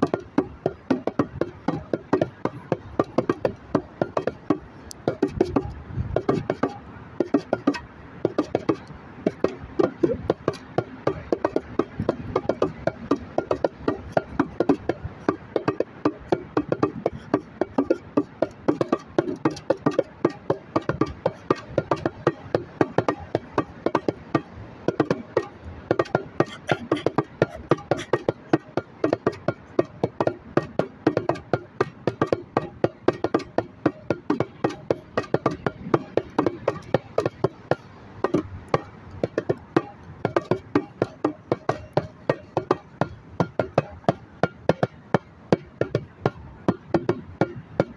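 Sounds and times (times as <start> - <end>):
woody percussion knocks: 0.0 - 47.9.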